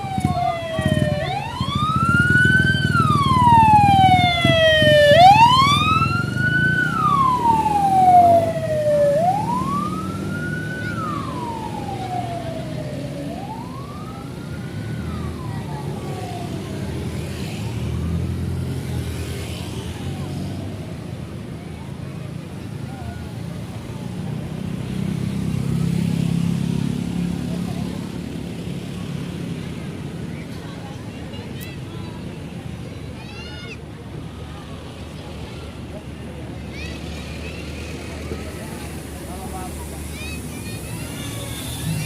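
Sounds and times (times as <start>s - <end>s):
siren-like horn wailing: 0.0s - 16.6s
bus engine rumble: 0.0s - 42.0s.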